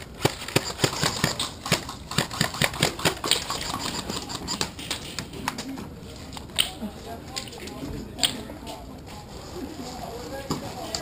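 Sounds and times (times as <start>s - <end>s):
airsoft gun shots: 0.2s - 4.1s.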